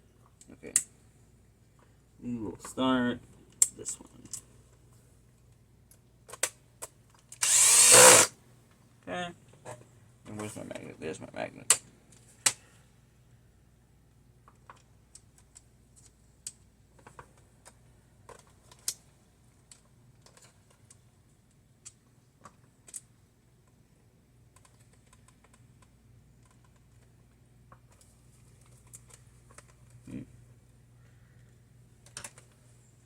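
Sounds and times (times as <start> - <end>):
faint steady hum: 0.0 - 33.0
small screws clicking and tapping: 14.4 - 23.8, 24.5 - 30.0, 31.4 - 32.6.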